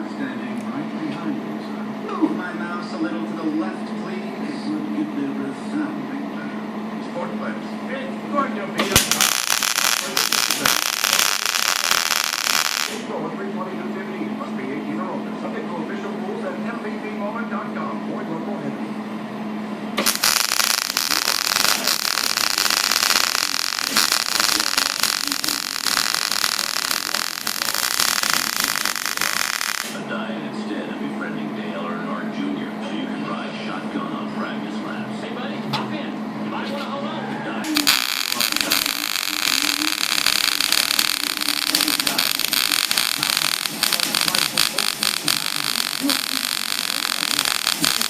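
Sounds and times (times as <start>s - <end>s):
arc welder crackling: 8.8s - 13.1s, 20.0s - 30.0s, 37.6s - 48.0s.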